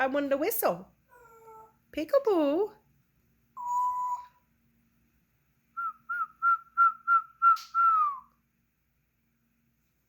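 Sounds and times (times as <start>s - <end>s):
person whistling: 3.6s - 4.4s, 5.8s - 8.4s.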